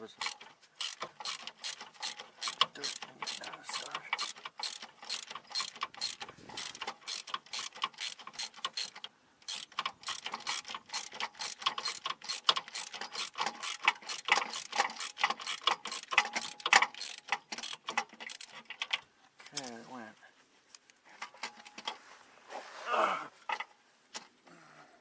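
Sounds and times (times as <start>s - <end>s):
socket ratchet clicking: 0.2s - 19.0s.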